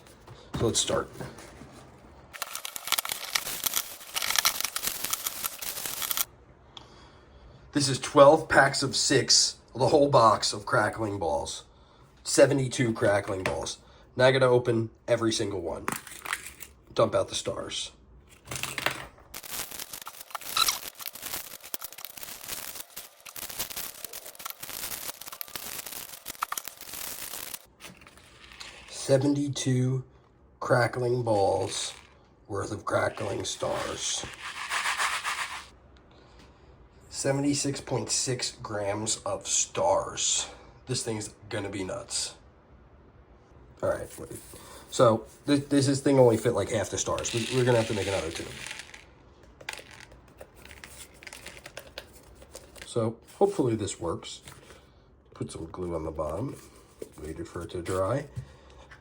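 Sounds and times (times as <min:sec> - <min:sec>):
packaging crinkling and rustling: 0:02.3 - 0:06.3, 0:18.3 - 0:28.9, 0:47.2 - 0:49.0, 0:49.6 - 0:53.0.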